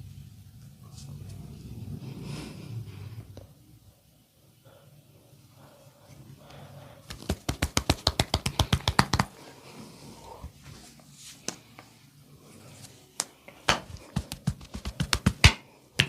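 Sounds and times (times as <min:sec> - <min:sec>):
hands rubbing skin: 0:07.0 - 0:09.5, 0:12.8 - 0:15.6
hands slapping on body: 0:07.1 - 0:09.3, 0:11.4 - 0:11.8, 0:13.2 - 0:16.0.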